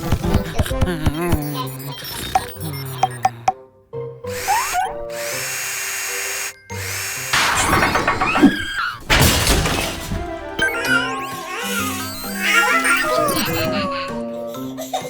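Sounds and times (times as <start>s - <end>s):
cartoon drill whirring: 0.0s - 3.5s, 4.3s - 14.2s
background music: 9.0s - 15.0s.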